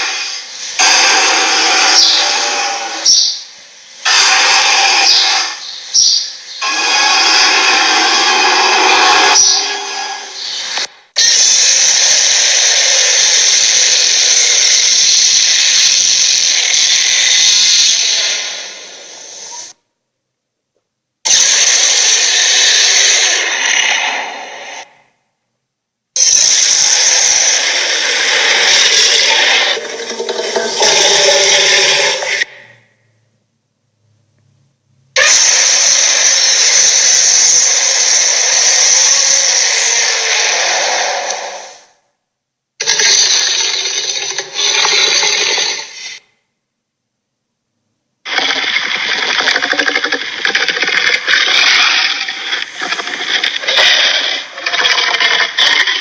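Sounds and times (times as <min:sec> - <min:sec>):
dragon hissing roar: 0:00.0 - 0:03.1, 0:04.0 - 0:05.6, 0:06.6 - 0:19.8, 0:21.3 - 0:25.0, 0:26.2 - 0:32.7, 0:35.2 - 0:42.0.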